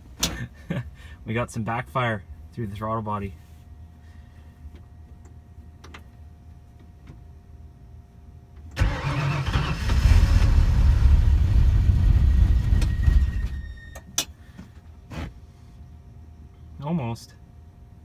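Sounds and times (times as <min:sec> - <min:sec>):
engine starting and running roughly: 0:08.8 - 0:13.7.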